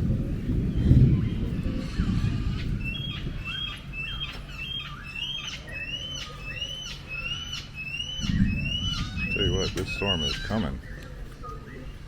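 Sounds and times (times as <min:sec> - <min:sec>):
low rumbling noise: 0:00.0 - 0:04.8, 0:08.1 - 0:11.3
bird chirping: 0:00.6 - 0:12.0.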